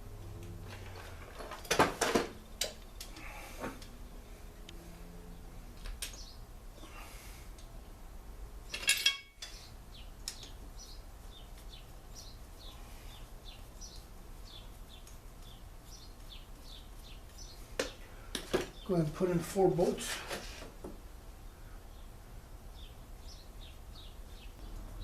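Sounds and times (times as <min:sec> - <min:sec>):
metallic clatter of engine parts: 0:00.5 - 0:03.9, 0:08.7 - 0:09.7
bird chirping: 0:06.1 - 0:07.1, 0:08.6 - 0:19.4, 0:21.4 - 0:25.0.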